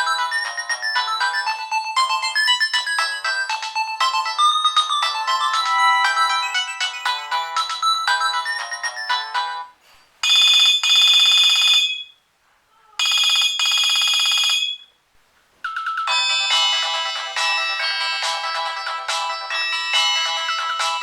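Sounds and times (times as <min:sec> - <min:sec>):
phone ringtone melody: 0:00.0 - 0:12.1, 0:13.0 - 0:14.8, 0:15.6 - 0:21.0.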